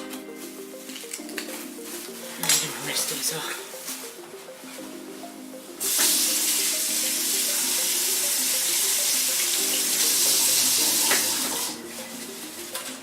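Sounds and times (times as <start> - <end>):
faucet running water: 5.8 - 12.9.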